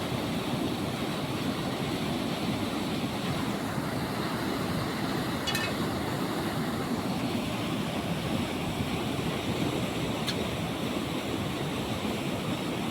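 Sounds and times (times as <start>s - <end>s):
water rushing: 0.0s - 12.9s.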